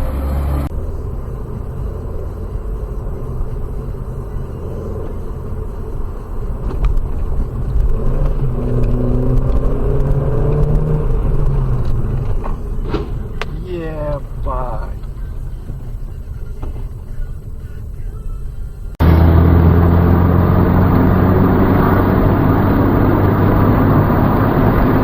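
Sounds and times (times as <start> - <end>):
car engine accelerating: 0.0 - 17.7, 18.8 - 25.0
road rumble: 0.0 - 25.0.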